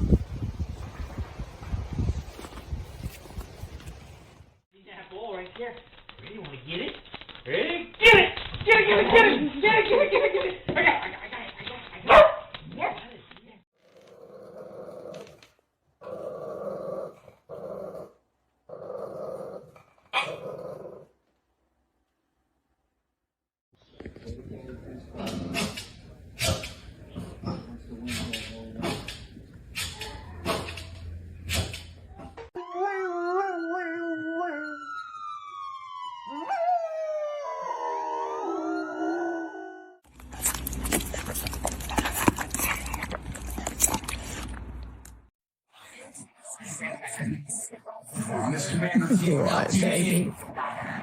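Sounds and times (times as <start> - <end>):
dog barking: 12.0 - 13.0
dog growling: 14.0 - 21.1
wailing emergency siren: 32.6 - 40.0
dog howling: 36.2 - 40.0.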